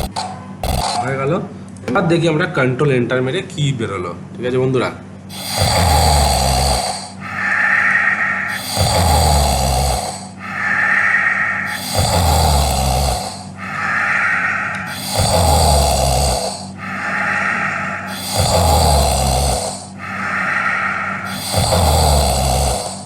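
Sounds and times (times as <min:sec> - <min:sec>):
rattling snore: 0:00.0 - 0:01.2, 0:05.3 - 0:23.0
whistling breath: 0:05.3 - 0:23.0.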